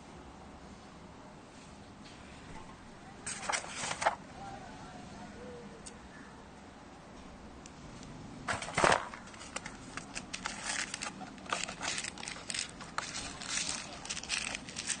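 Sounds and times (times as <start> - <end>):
rustling crinkling: 3.2 - 4.2, 8.5 - 15.0.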